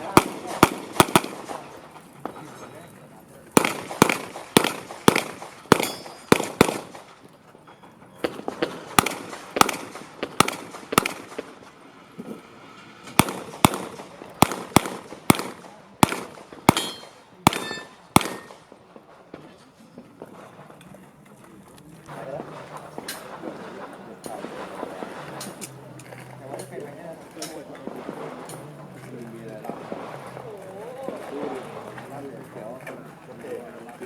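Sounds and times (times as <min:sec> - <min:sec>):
handgun shots with echo: 0:00.0 - 0:01.9, 0:03.6 - 0:07.3, 0:08.2 - 0:11.7, 0:13.2 - 0:18.8.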